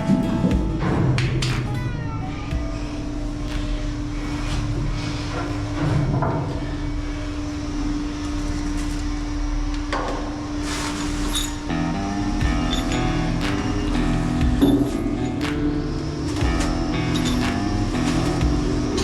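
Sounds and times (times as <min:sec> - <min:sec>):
knocks and clanks: 0:00.0 - 0:07.0, 0:12.4 - 0:19.0.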